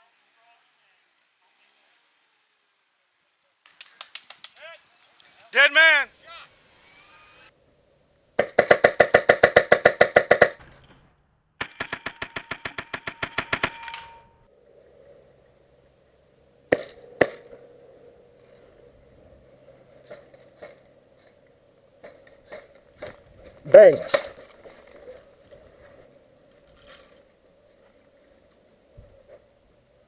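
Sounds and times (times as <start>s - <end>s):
airsoft gun bursts: 8.4s - 10.6s, 11.6s - 14.2s.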